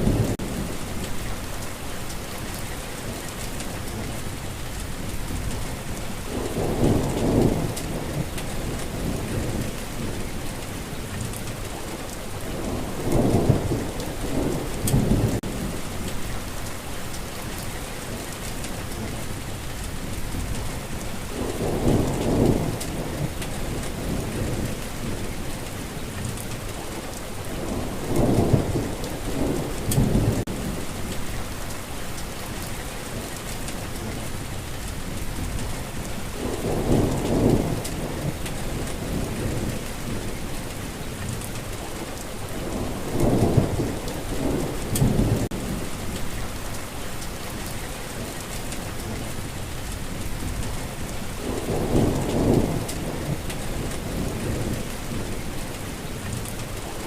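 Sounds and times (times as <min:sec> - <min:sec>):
heavy rain falling: 0:00.0 - 0:57.0
thunder rolling: 0:12.4 - 0:16.3, 0:27.4 - 0:31.4, 0:36.4 - 0:40.4, 0:42.5 - 0:46.7, 0:50.2 - 0:55.5.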